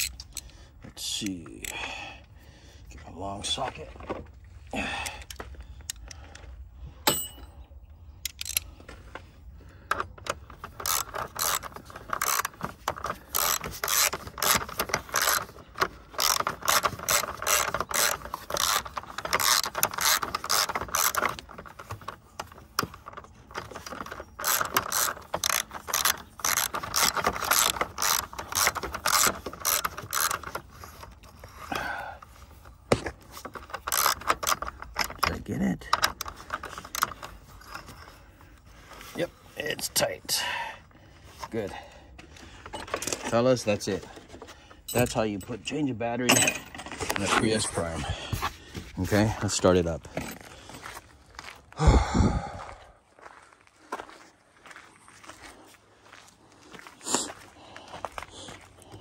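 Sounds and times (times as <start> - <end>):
ratchet wrench clicking: 0.0 - 0.5, 8.2 - 8.7, 10.5 - 22.2, 22.8 - 30.8, 33.6 - 35.3.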